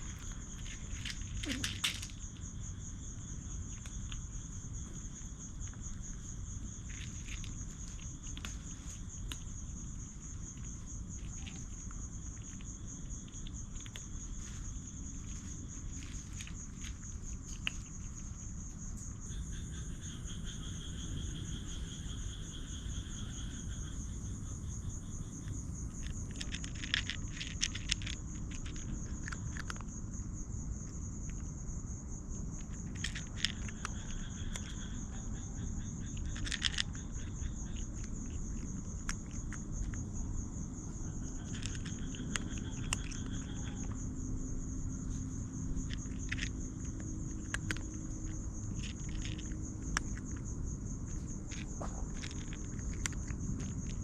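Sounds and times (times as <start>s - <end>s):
sharp clicks and rustles: 0.0s - 2.7s, 3.6s - 19.1s, 25.5s - 29.9s, 45.1s - 54.0s
steady low rumble: 0.0s - 26.4s
lower insect trill: 0.0s - 54.0s.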